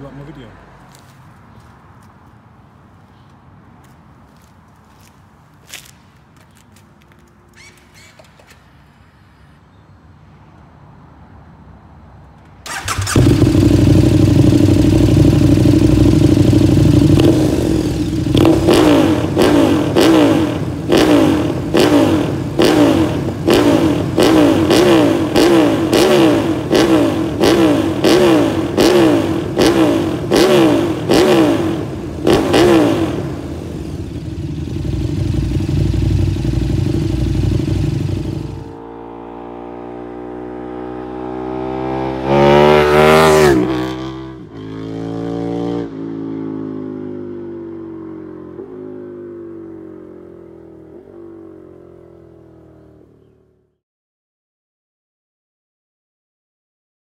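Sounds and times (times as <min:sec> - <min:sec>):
motorcycle engine idling and revving: 0:12.6 - 0:53.8.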